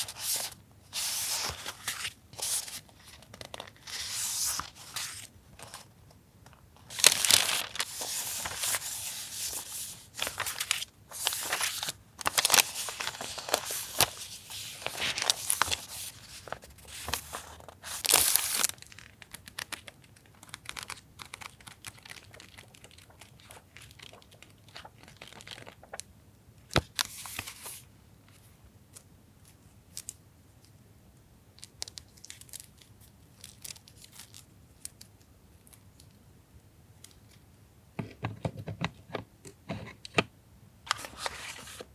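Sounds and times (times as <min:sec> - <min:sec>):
packaging rustling and tearing: 0:06.8 - 0:26.0.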